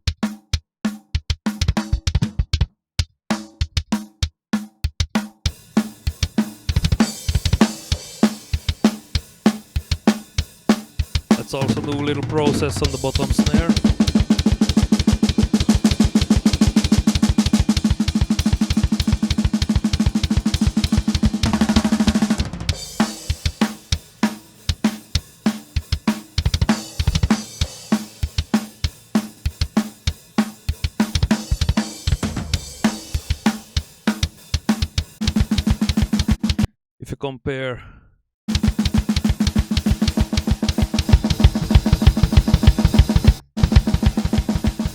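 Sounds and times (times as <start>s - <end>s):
kick drum: 0.0s - 5.2s, 34.2s - 36.7s, 38.5s - 44.9s
snare drum hits: 5.8s - 36.7s, 38.5s - 44.9s.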